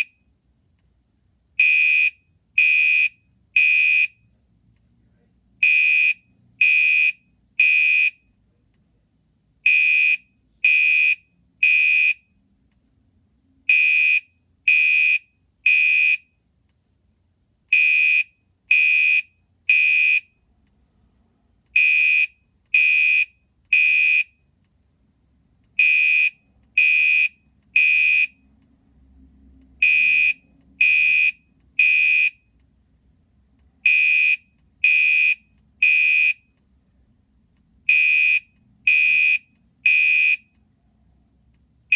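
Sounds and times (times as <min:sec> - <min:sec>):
fire alarm horn beeping: 0:01.6 - 0:04.2, 0:05.6 - 0:08.2, 0:09.6 - 0:12.3, 0:13.7 - 0:16.3, 0:17.7 - 0:20.4, 0:21.8 - 0:24.4, 0:25.8 - 0:28.3, 0:29.8 - 0:32.5, 0:33.8 - 0:36.5, 0:37.9 - 0:40.6.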